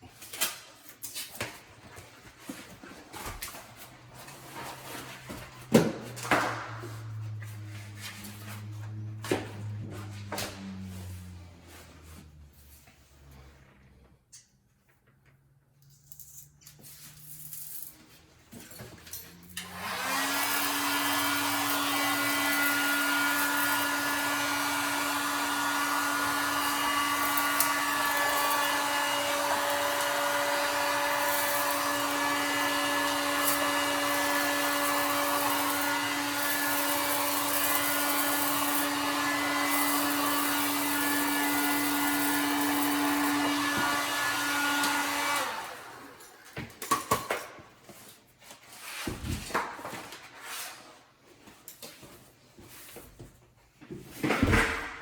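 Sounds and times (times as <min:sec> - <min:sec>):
hot-air blower running: 0:19.5 - 0:47.1.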